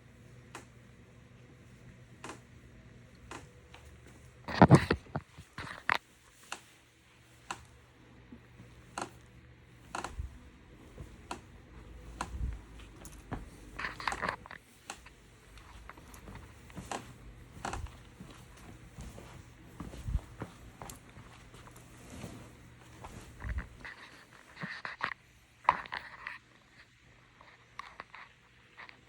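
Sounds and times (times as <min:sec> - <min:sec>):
sofa creaking and clicking: 0:00.4 - 0:26.2.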